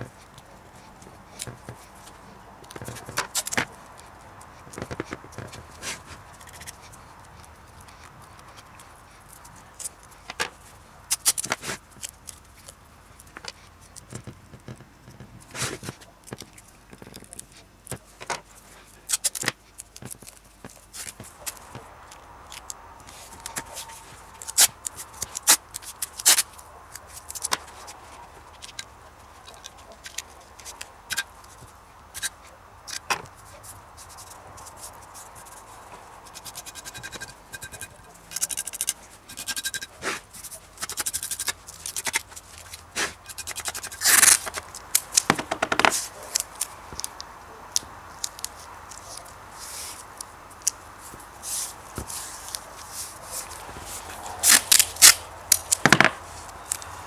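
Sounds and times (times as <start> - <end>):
scraping: 32.2 - 47.2, 47.8 - 57.0
sharp clicks and knocks: 36.3 - 47.3.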